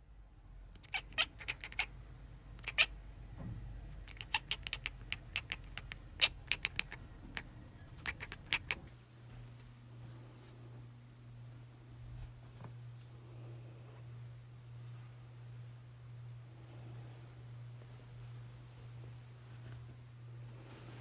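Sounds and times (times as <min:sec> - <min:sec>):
low steady hum: 0:00.0 - 0:21.0
cat making clicking sounds: 0:00.8 - 0:01.9, 0:02.6 - 0:03.0, 0:04.0 - 0:08.9.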